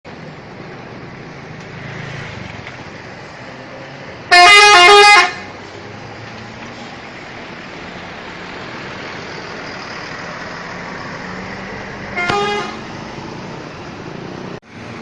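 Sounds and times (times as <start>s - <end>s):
road traffic noise: 0.0s - 15.0s
musical air horn tune: 4.3s - 5.4s, 12.2s - 12.8s.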